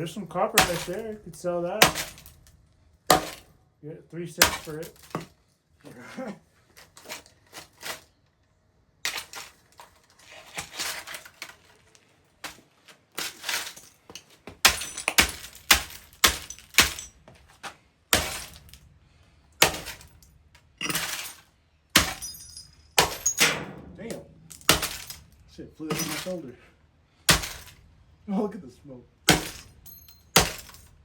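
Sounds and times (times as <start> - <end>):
laptop being smashed: 14.6 - 17.2, 23.0 - 25.3, 27.3 - 27.8.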